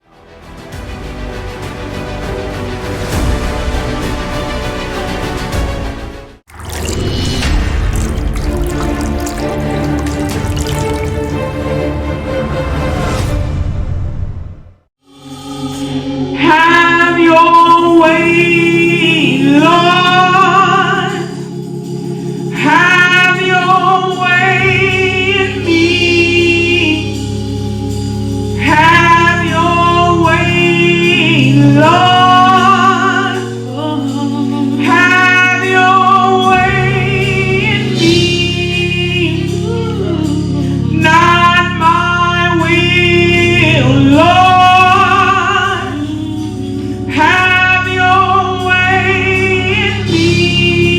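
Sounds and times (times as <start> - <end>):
gospel singing: 15.0 - 50.9.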